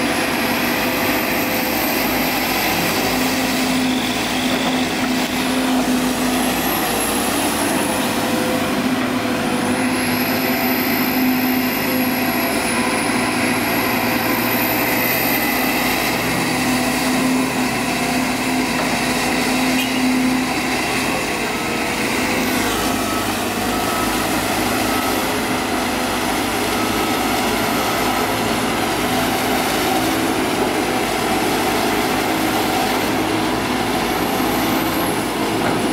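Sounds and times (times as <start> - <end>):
diesel engines running: 0.0 - 35.9.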